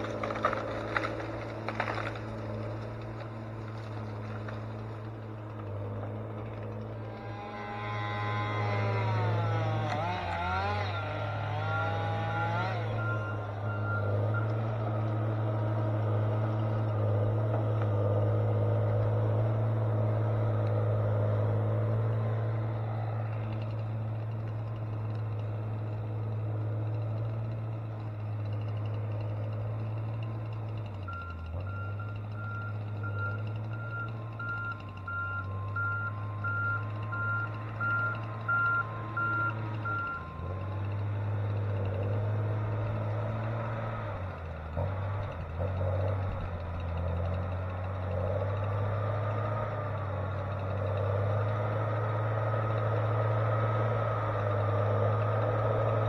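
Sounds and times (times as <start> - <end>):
heavy diesel machine engine: 0.0 - 56.0
reversing alarm beeps: 12.9 - 14.7, 31.1 - 40.5.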